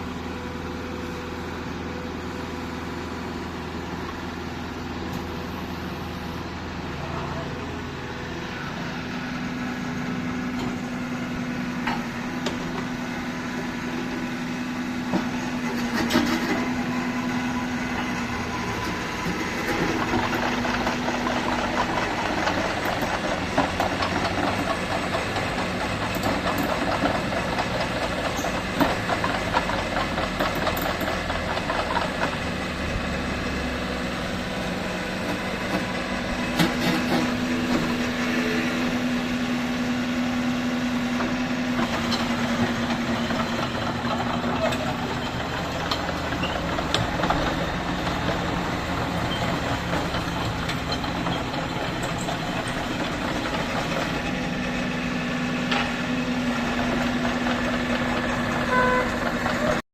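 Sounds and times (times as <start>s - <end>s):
excavator diesel engine running: 0.0s - 59.8s
rattling clatter of machine: 15.1s - 16.9s, 18.0s - 34.2s, 35.1s - 38.2s, 40.9s - 59.8s.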